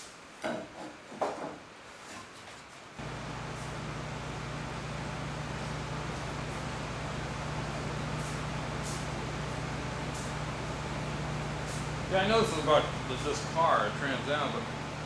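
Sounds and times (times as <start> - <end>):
motor-driven machine running: 3.0 - 15.0.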